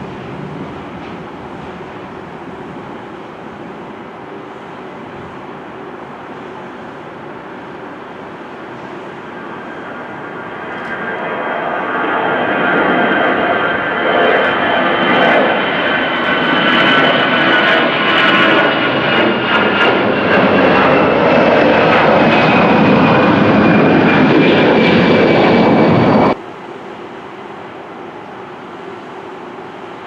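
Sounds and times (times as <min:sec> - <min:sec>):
jet engines roaring with high whine: 0:00.0 - 0:30.0
quiet steady background noise: 0:26.4 - 0:30.0.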